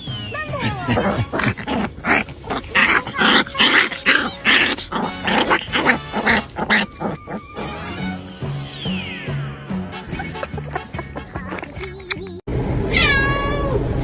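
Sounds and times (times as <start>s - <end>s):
dog barking rapidly: 0.5s - 7.4s.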